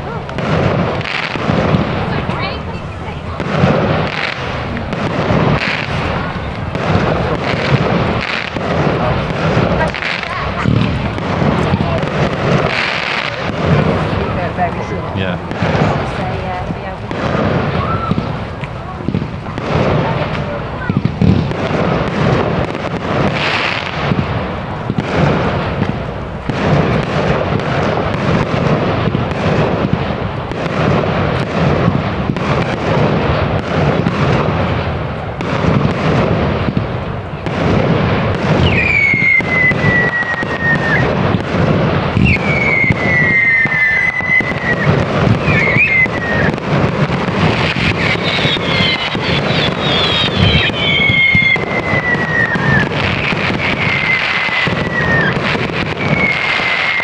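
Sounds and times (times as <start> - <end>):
fireworks bangs and crackling: 0.0 - 57.0
falling firework whistles: 17.3 - 18.8, 38.3 - 57.0.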